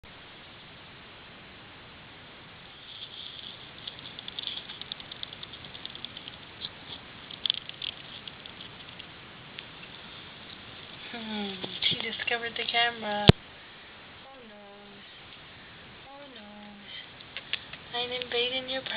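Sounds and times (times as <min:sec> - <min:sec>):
rat teeth grinding clicks: 0:02.9 - 0:09.9.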